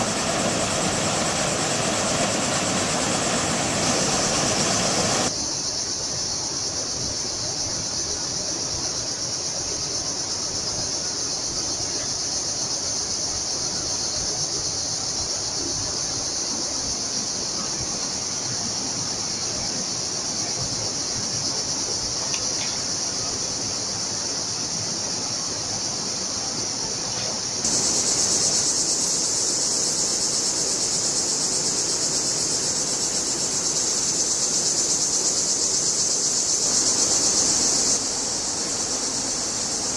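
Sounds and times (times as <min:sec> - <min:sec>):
stream murmuring: 0:00.0 - 0:05.3, 0:17.4 - 0:39.9
high insect chorus: 0:00.0 - 0:39.9.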